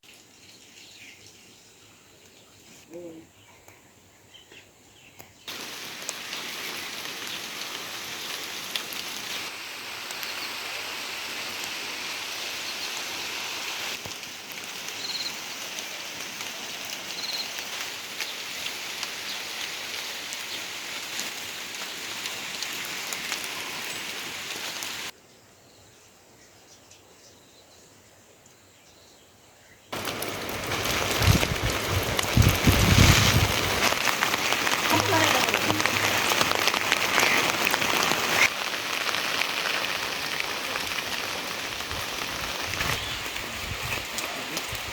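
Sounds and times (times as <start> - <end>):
steady rain falling: 5.4 - 25.2, 29.9 - 44.9.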